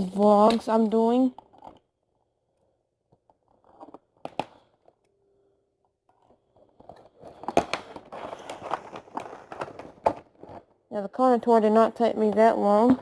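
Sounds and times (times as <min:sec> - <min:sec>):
crinkling packaging: 0:06.5 - 0:10.7.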